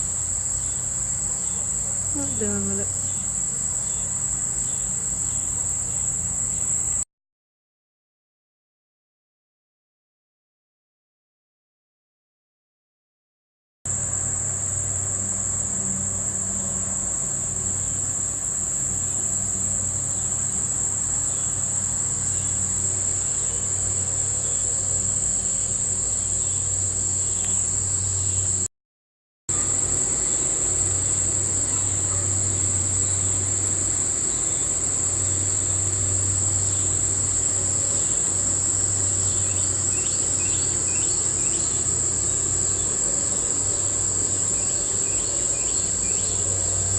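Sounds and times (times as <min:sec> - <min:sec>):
insects trilling: 0:00.0 - 0:07.0, 0:13.9 - 0:28.7, 0:29.5 - 0:46.9
low droning hum: 0:29.5 - 0:46.9.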